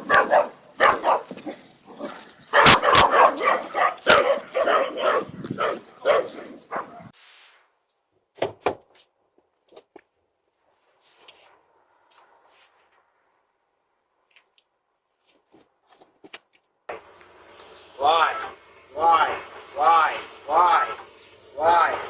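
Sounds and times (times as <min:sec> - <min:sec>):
dog barking: 0:00.0 - 0:07.2.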